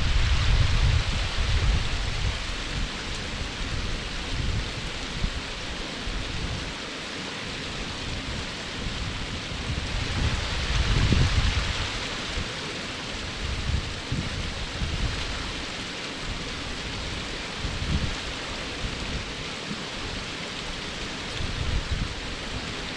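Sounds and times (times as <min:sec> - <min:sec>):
low rumble: 0:00.0 - 0:03.2
waterfall rushing: 0:00.0 - 0:22.9.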